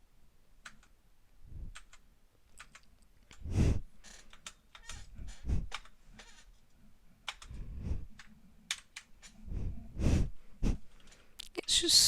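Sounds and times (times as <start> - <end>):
mechanical keyboard clicks: 1.7 - 2.0, 2.6 - 3.4.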